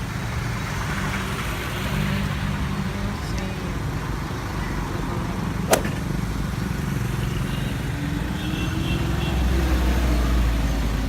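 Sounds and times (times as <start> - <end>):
street traffic rumble: 0.0 - 11.0
sharp click: 5.7 - 6.1.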